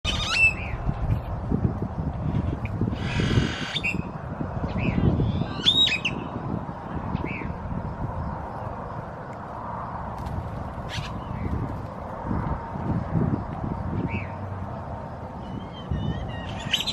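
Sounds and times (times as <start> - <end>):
birds squeaking and chattering: 0.0 - 1.3, 2.2 - 6.3, 10.8 - 11.6, 15.4 - 16.9
harsh rasping bird call: 15.4 - 16.9.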